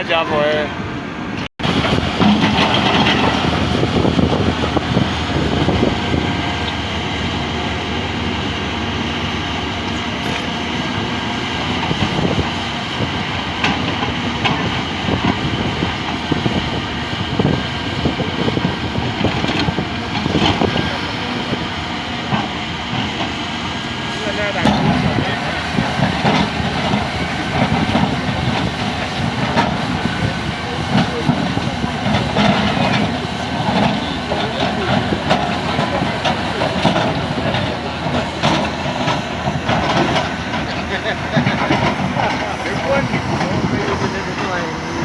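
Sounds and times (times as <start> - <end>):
heavy construction machinery rattling: 0.0 - 45.0.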